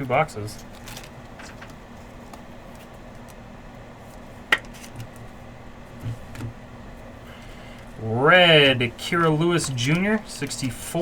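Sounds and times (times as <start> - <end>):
steady low hum: 0.0 - 11.0
cards handled on tabletop: 4.0 - 5.3.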